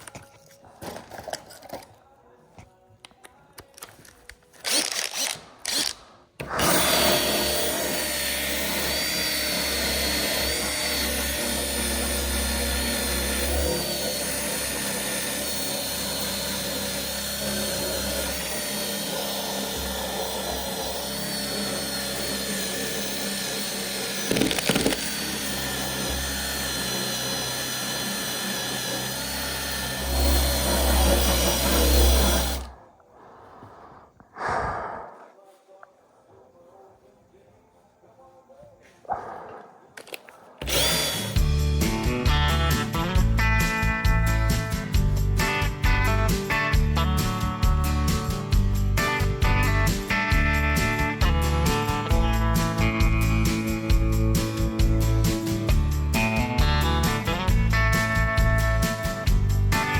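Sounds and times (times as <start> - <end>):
power tool whining: 4.6 - 32.8, 40.6 - 44.9.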